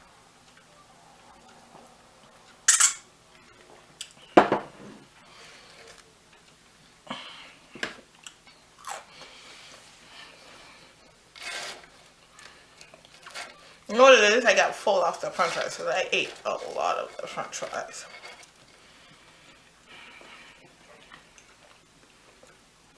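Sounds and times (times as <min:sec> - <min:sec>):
utensil clinking on plates: 0:02.7 - 0:03.1.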